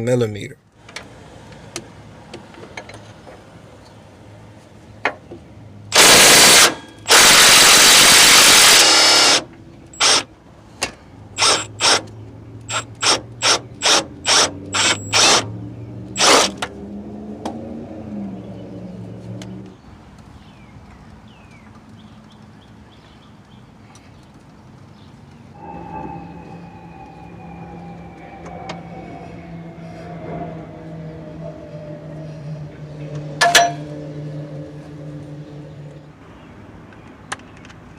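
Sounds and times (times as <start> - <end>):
impact wrench hammering: 33.4 - 33.8.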